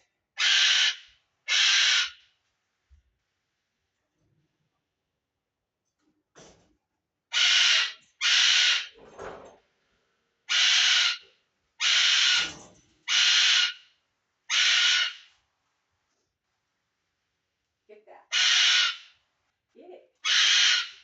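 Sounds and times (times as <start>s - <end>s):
bird screeching: 0.4s - 2.2s, 7.4s - 9.0s, 10.5s - 11.2s, 11.8s - 13.8s, 14.5s - 15.3s, 18.3s - 19.1s, 20.2s - 21.0s.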